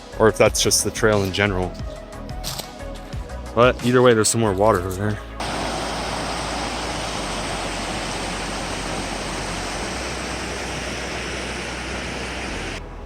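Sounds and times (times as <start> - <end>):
water rushing over rocks: 5.4 - 12.8.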